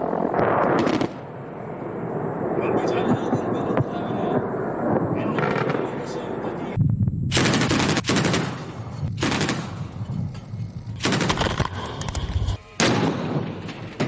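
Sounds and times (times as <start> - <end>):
rumbling echo: 0.0 - 14.0
automatic weapons fire: 0.4 - 1.2, 7.3 - 9.9, 11.0 - 11.8, 12.8 - 14.0.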